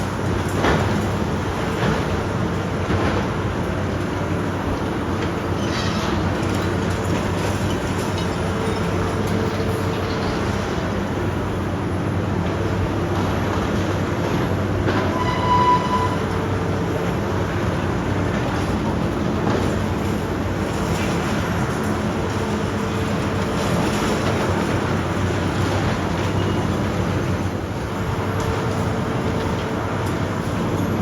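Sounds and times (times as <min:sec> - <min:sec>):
excavator diesel engine: 0:00.0 - 0:31.0
high-pitched squeal: 0:15.1 - 0:16.3.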